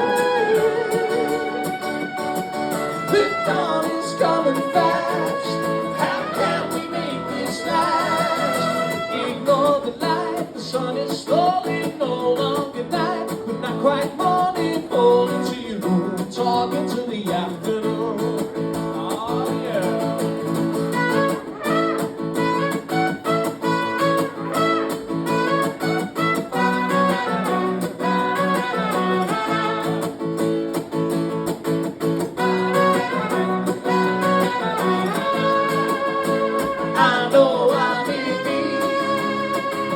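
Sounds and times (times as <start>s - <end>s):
person singing: 0.0s - 2.2s, 3.0s - 20.3s, 32.4s - 39.9s
live band music: 0.0s - 9.8s, 20.5s - 39.9s
guitar playing: 0.0s - 39.9s.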